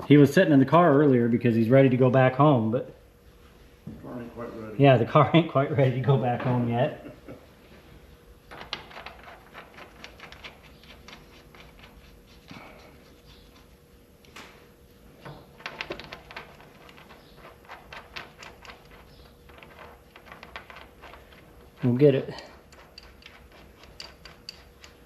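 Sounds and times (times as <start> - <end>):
faint steady hum: 0.0 - 25.0
hand tools clicking and clinking: 15.8 - 25.0.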